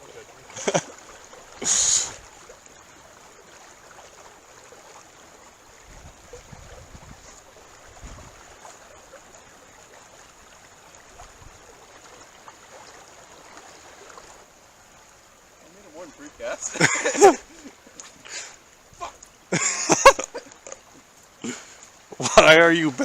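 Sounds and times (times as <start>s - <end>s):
river water rushing over riffle: 0.0s - 23.0s.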